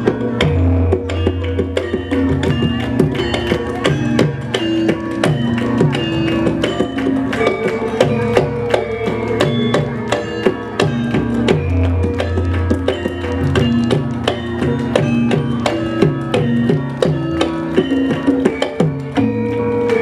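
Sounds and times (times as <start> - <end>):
metallophones ringing: 0.0 - 20.0
drum strokes: 9.3 - 19.2.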